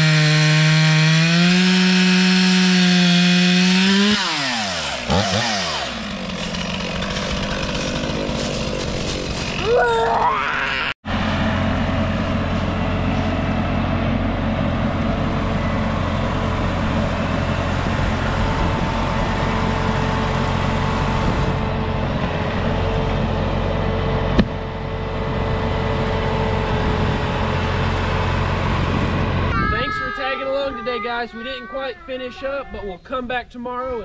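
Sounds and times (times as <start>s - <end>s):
tractor diesel engine running: 5.9s - 9.6s, 11.1s - 29.9s.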